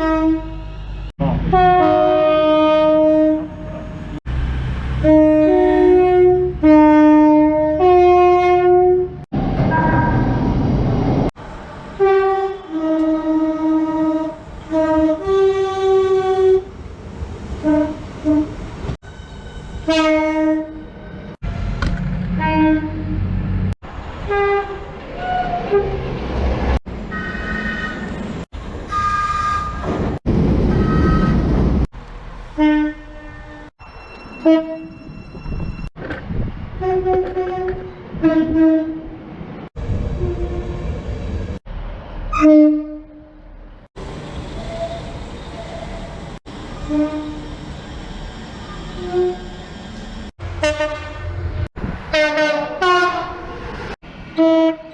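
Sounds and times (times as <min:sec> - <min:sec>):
train horn blasts: 0:00.0 - 0:04.2, 0:05.0 - 0:10.2, 0:12.0 - 0:16.7, 0:17.6 - 0:18.6, 0:19.8 - 0:20.9, 0:22.4 - 0:23.2, 0:32.6 - 0:33.7, 0:42.3 - 0:43.3, 0:46.8 - 0:47.4, 0:50.6 - 0:51.4, 0:52.1 - 0:53.4, 0:54.4 - 0:54.9
train rumbling past: 0:00.0 - 0:54.9.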